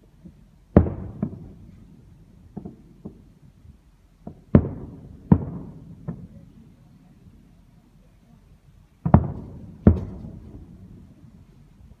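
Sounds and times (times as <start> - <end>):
fireworks exploding: 0.2 - 3.4, 4.2 - 6.6, 9.0 - 11.4.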